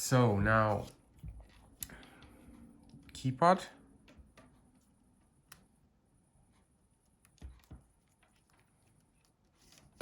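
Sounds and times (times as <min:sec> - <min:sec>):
faint clicks of plastic parts: 0:00.8 - 0:03.2.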